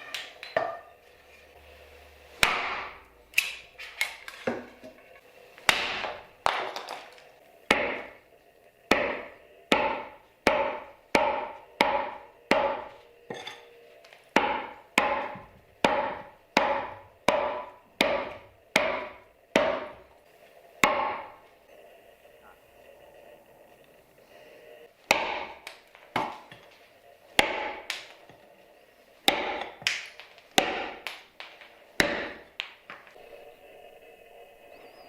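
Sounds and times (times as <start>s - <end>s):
meat cleaver chopping: 2.4s - 4.6s, 5.6s - 6.8s, 7.7s - 8.2s, 8.9s - 12.9s, 14.4s - 20.0s, 20.8s - 21.4s, 25.0s - 26.6s, 27.4s - 28.2s, 29.2s - 32.8s.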